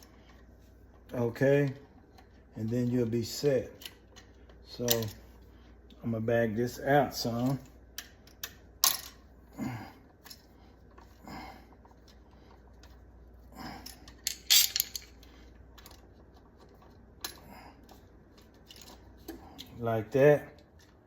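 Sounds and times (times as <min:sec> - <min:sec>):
wires rustling: 0:00.0 - 0:21.0
small clicks and clinks: 0:03.8 - 0:05.2, 0:13.8 - 0:16.0.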